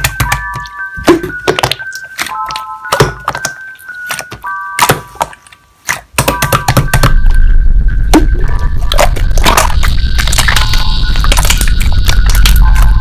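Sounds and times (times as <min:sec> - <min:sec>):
slime clicking and popping: 0:00.0 - 0:07.4, 0:08.9 - 0:13.0
loud low rumble: 0:07.3 - 0:13.0.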